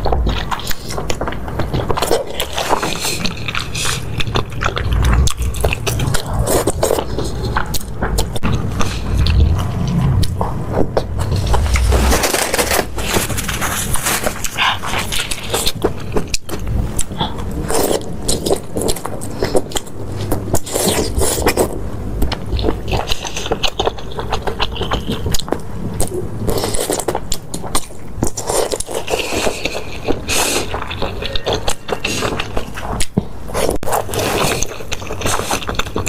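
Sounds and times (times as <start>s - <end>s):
chewing and biting food: 0.0s - 36.0s.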